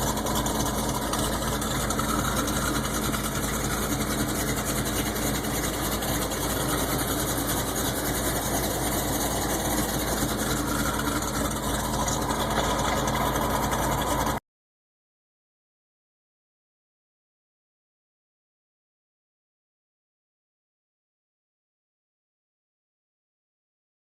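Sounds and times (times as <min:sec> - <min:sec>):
car engine idling roughly: 0:00.0 - 0:14.4.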